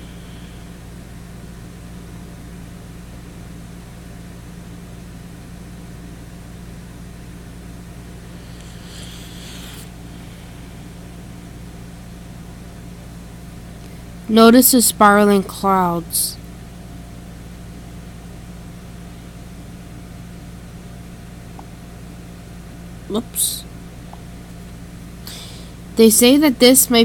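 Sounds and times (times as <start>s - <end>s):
low electrical hum and hiss: 0.0s - 27.0s.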